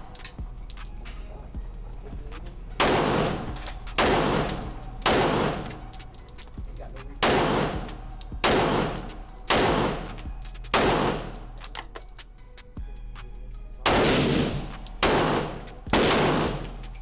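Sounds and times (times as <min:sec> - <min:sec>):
handgun shots reverberating: 0:02.8 - 0:06.5, 0:07.2 - 0:12.0, 0:13.9 - 0:17.0.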